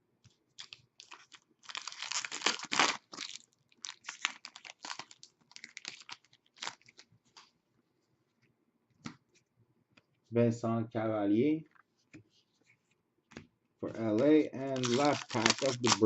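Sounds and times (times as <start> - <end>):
cards rustling and clicking: 0.6 - 7.5, 13.3 - 16.0
foil wrapper crinkling and tearing: 0.6 - 7.5, 14.7 - 16.0.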